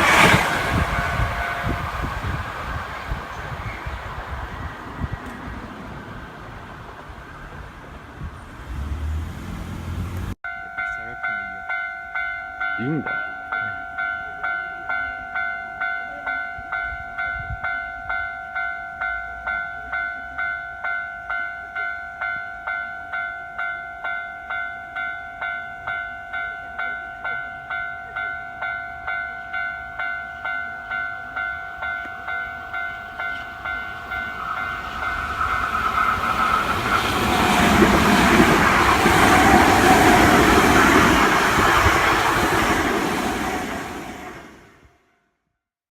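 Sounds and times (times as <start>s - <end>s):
level crossing alarm ringing: 0.0s - 5.2s, 24.7s - 44.6s
electric train passing: 0.0s - 12.3s, 13.5s - 45.0s.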